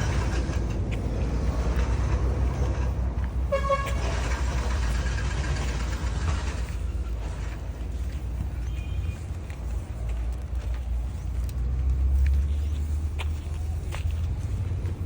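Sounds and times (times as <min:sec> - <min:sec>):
vehicle engine and road rumble: 0:00.0 - 0:15.0
car horn toot: 0:03.5 - 0:04.3, 0:08.6 - 0:09.2.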